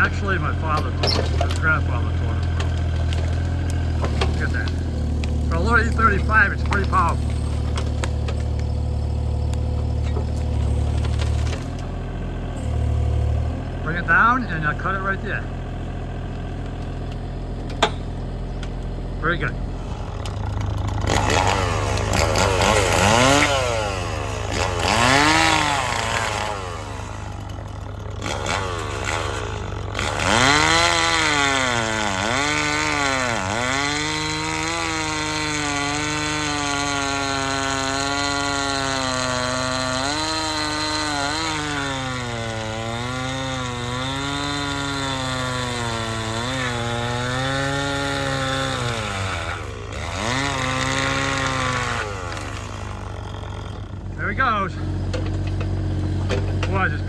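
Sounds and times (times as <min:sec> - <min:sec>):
low engine hum: 0:00.0 - 0:28.3, 0:52.9 - 0:57.0
chainsaw cutting log: 0:00.0 - 0:57.0.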